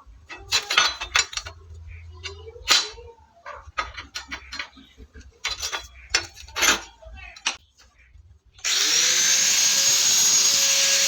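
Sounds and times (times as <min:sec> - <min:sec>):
metal clinking and knocking: 0:00.2 - 0:07.7.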